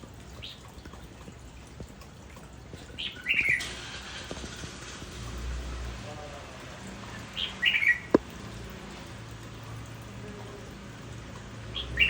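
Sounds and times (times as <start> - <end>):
myna bird calling: 3.0 - 3.7, 7.1 - 8.2.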